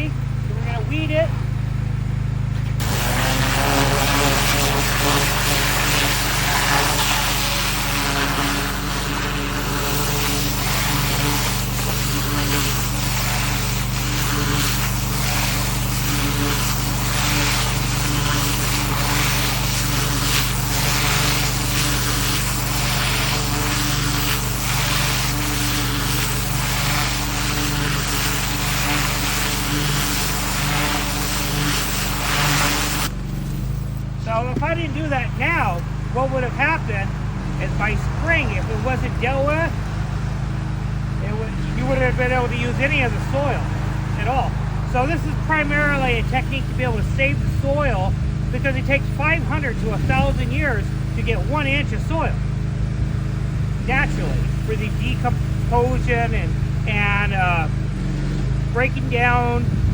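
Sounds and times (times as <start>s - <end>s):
pressure washer motor hum: 0.0s - 59.9s
water jet hissing: 2.8s - 34.2s, 48.4s - 51.7s.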